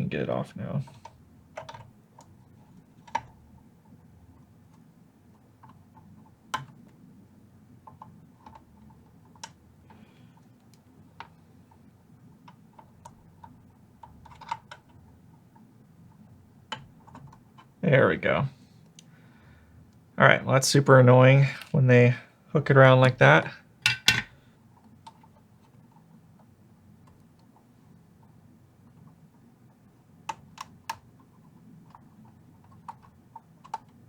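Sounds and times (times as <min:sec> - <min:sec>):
faint hum: 0:00.0 - 0:34.0
hand tools clicking and tapping: 0:23.8 - 0:24.3.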